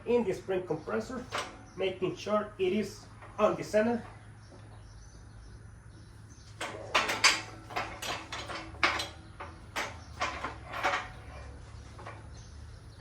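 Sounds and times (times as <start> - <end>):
metal clanks and knocks: 1.0 - 1.8, 6.4 - 12.6.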